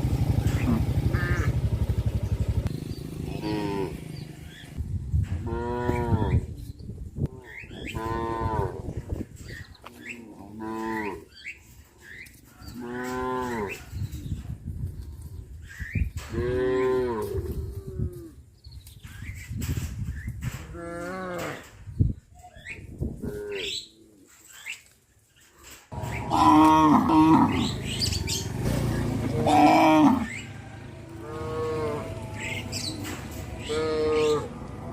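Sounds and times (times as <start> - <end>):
small engine running: 0.0 - 4.8, 26.0 - 34.9
cattle mooing: 0.5 - 1.5, 3.1 - 4.2, 5.4 - 6.4, 7.8 - 8.9, 10.2 - 11.3, 12.8 - 13.8, 16.3 - 18.3, 26.0 - 34.9.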